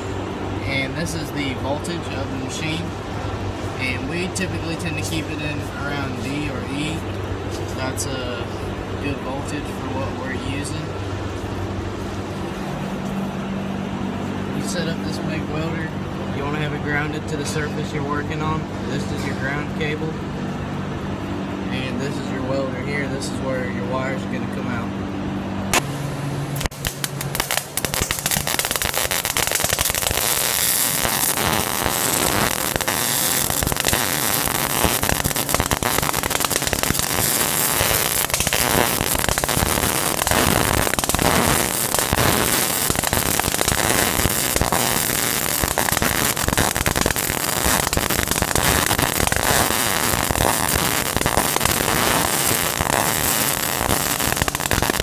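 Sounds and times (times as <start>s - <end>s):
welding arc crackling: 26.6s - 55.0s.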